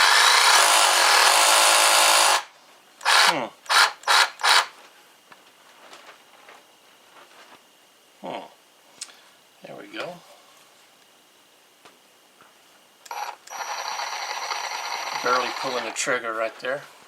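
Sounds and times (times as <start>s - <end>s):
reciprocating saw revving: 0.0s - 4.6s.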